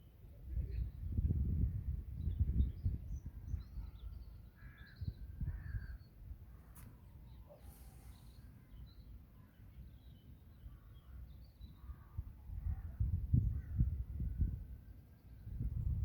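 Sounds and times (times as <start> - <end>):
faint bird calls: 3.6 - 9.7.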